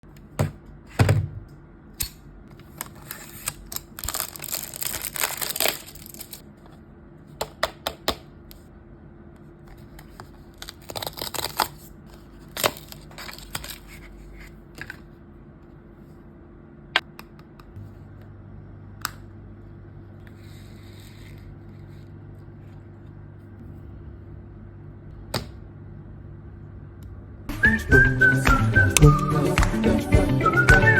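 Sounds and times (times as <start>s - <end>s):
wrapping crinkling and tearing: 2.8s - 6.4s, 10.0s - 14.2s.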